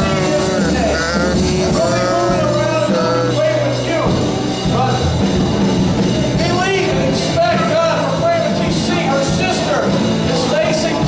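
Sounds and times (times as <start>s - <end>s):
voices singing: 0.0s - 3.9s
bass notes: 0.0s - 7.3s
worship band playing: 0.0s - 11.0s.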